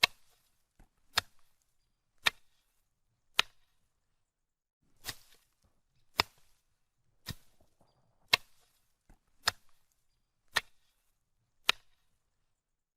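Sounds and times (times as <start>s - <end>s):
rustle of cut grass: 4.9s - 5.6s
machete slashing grass: 4.9s - 6.6s, 7.2s - 7.6s.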